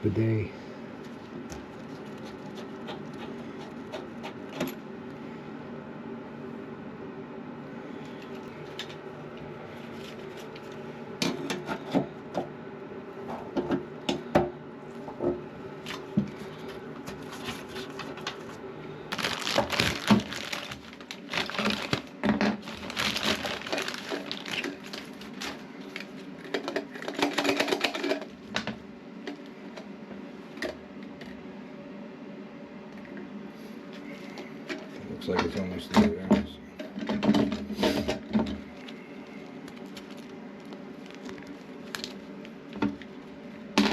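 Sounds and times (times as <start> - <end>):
steady low hum: 0.0 - 43.9
crackling and rustling: 8.2 - 11.4, 15.9 - 29.5, 37.0 - 43.9
clicks and knocks of plastic parts: 19.2 - 29.4, 34.7 - 39.0.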